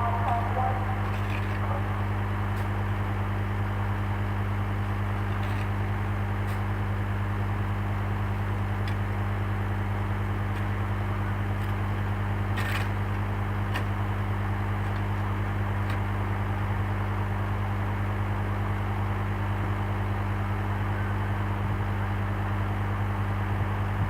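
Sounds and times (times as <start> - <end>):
vehicle engine running: 0.0 - 24.0.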